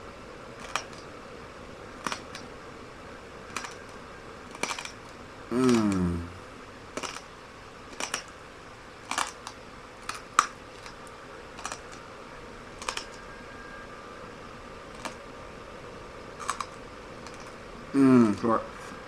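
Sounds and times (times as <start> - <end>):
glass crunching while chewed: 4.5 - 5.0, 7.0 - 7.2, 8.0 - 8.3, 9.1 - 11.0, 11.6 - 12.0, 12.8 - 13.2, 16.4 - 17.6.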